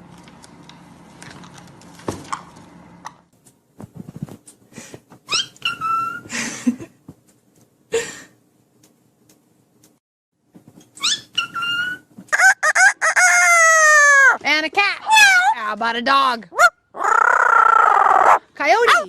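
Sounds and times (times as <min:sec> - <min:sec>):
parrot squawks: 0:05.3 - 0:06.2, 0:11.0 - 0:14.4
parrot whistled calls: 0:05.3 - 0:06.3, 0:11.0 - 0:14.3.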